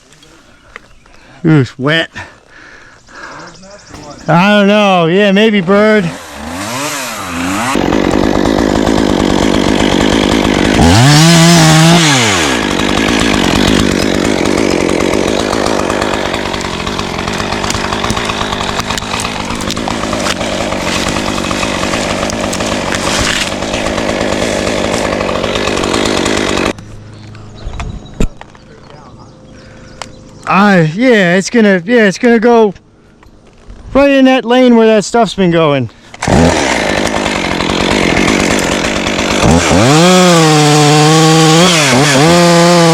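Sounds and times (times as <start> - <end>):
chainsaw cutting wood: 3.8 - 26.9, 35.9 - 42.9.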